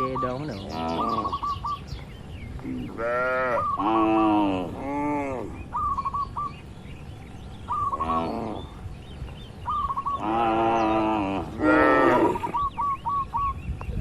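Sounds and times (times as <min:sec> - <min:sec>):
bird chirping phrase: 0:00.0 - 0:14.0
cattle mooing: 0:02.9 - 0:05.6, 0:10.2 - 0:12.6.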